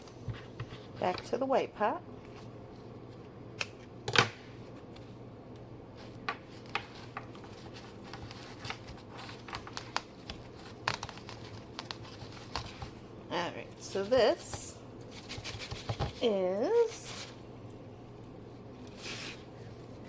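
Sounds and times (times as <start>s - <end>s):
packaging clicks and rustles: 6.6s - 13.0s.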